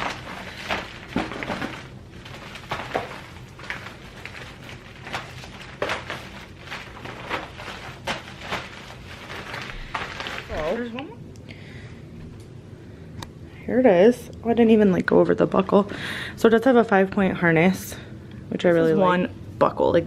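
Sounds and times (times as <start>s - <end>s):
plastic cover rustling: 0.0s - 11.2s.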